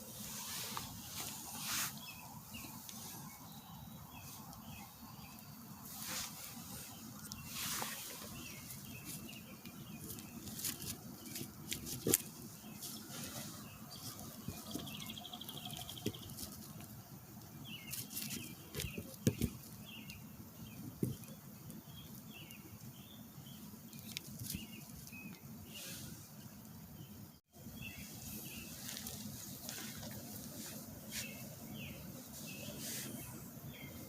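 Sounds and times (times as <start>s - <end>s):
faint bird chirps: 12.6s - 16.4s.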